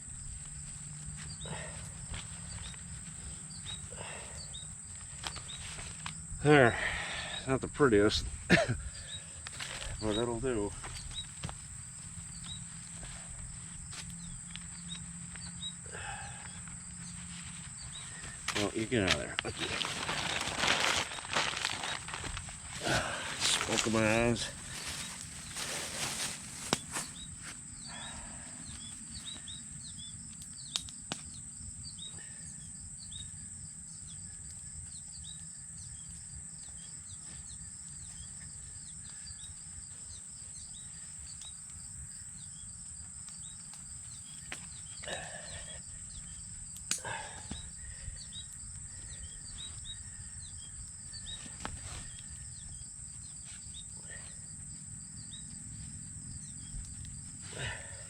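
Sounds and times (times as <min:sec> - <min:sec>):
insect trilling: 0:00.0 - 0:58.0.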